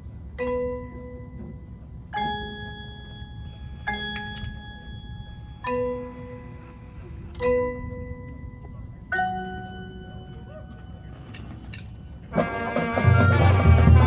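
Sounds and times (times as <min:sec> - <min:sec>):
tubular bells struck: 0:12.3 - 0:14.0.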